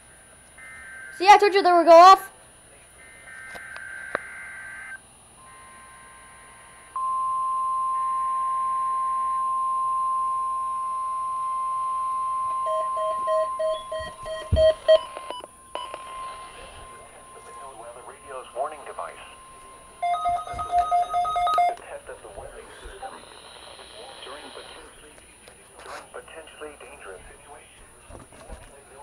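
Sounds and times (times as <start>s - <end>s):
steady weather alarm tone: 0.6s - 2.3s, 3.0s - 25.2s
beeping alert pulses: 12.6s - 21.8s
screeching data bursts: 12.7s - 21.8s, 23.1s - 25.0s.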